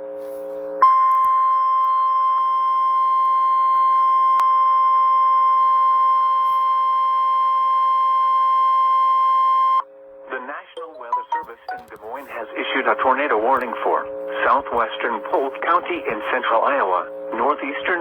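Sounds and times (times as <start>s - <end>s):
steady alert tone: 10.8s - 12.1s.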